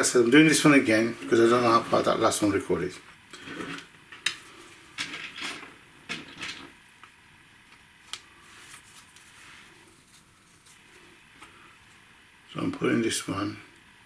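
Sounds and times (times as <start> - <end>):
soft rustling: 8.0 - 12.0.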